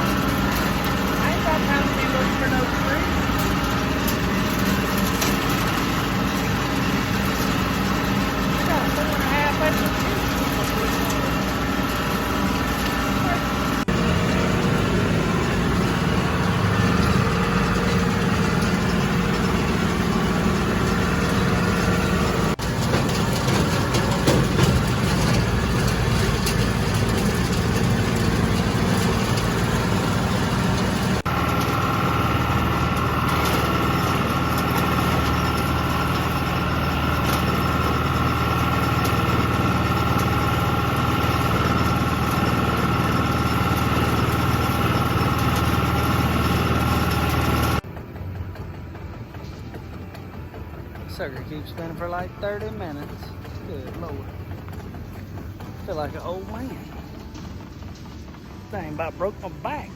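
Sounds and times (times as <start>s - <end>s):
tractor engine mowing: 0.0s - 59.9s.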